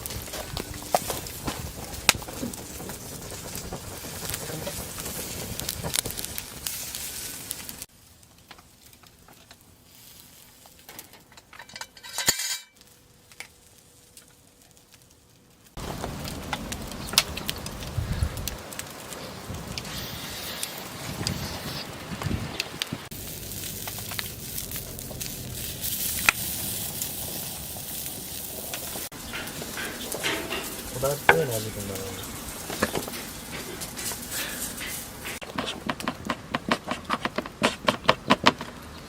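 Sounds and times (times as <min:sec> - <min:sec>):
crackling sizzle of cooking: 0:00.0 - 0:39.0
utensils and dishes clinking: 0:11.0 - 0:12.8, 0:29.1 - 0:35.4.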